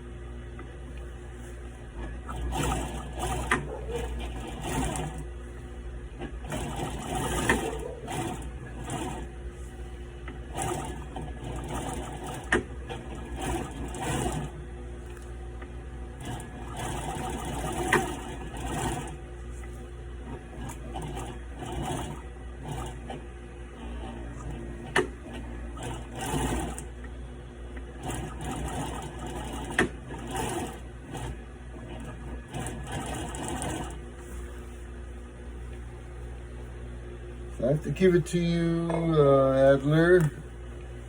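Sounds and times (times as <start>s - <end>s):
steady low hum: 0.0s - 41.0s
industrial sewing machine stitching: 1.9s - 5.3s, 6.0s - 9.4s, 10.2s - 14.6s, 16.1s - 19.3s, 20.2s - 27.0s, 27.8s - 34.1s.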